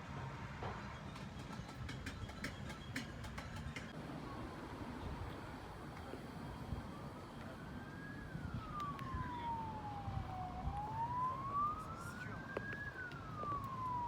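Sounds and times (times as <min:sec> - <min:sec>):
siren wailing: 0:06.5 - 0:14.0.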